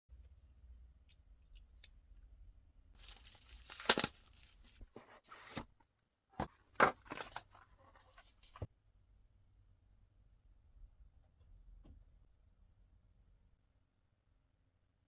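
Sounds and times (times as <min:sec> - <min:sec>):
packaging tearing and crinkling: 0:03.0 - 0:04.9.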